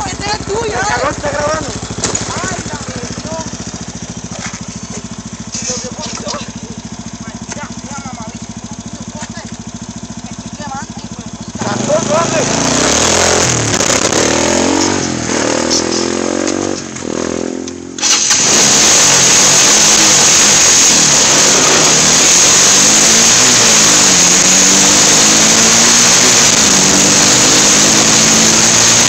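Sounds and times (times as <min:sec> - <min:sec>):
small engine revving: 0:00.0 - 0:29.0
loud steady rush of noise: 0:18.0 - 0:29.0.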